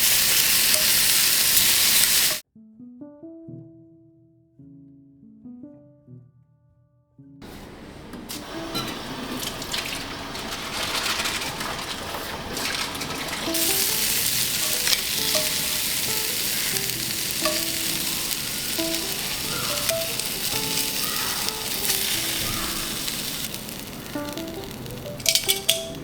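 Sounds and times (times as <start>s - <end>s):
food sizzling in frying pan: 0.0s - 2.4s, 8.3s - 26.0s
stirring in pan: 8.5s - 26.0s.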